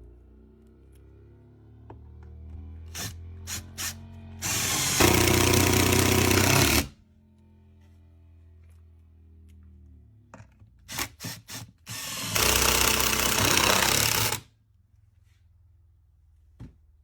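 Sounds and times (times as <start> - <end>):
power drill running: 2.9 - 6.9, 10.9 - 14.4.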